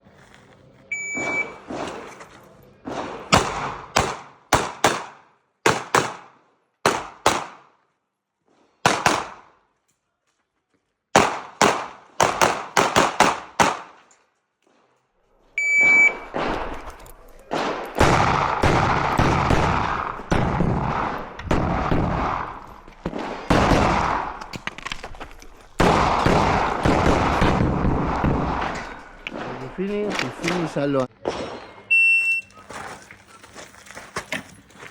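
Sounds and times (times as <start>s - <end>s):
shot timer beep: 0.9s - 1.6s, 15.6s - 16.2s
pistol gunshots: 2.9s - 7.7s, 8.8s - 9.6s, 11.1s - 14.0s, 15.8s - 24.6s, 25.8s - 30.6s.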